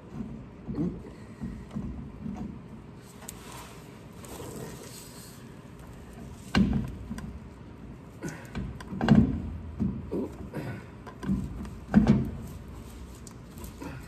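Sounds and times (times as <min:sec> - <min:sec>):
drive shaft clunks and knocks: 0:06.2 - 0:07.5, 0:08.4 - 0:12.6.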